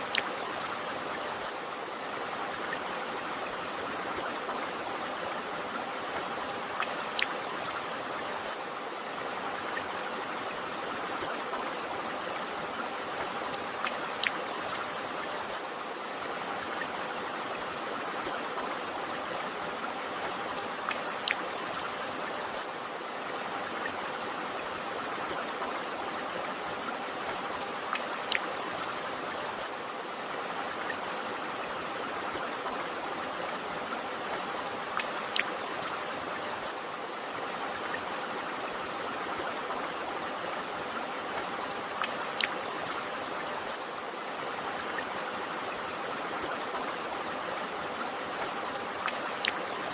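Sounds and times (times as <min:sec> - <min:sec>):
stream water flowing: 0:00.0 - 0:49.9
water drip splash: 0:06.4 - 0:08.6, 0:20.5 - 0:22.0, 0:27.6 - 0:29.0, 0:34.6 - 0:36.0, 0:48.7 - 0:49.9.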